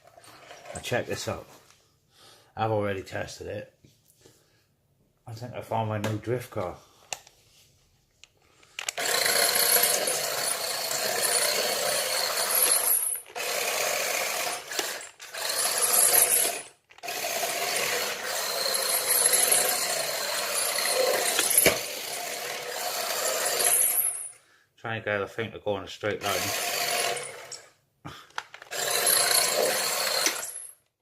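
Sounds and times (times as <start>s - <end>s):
toy car gear whine: 8.8s - 24.4s, 26.2s - 27.8s, 28.4s - 30.8s.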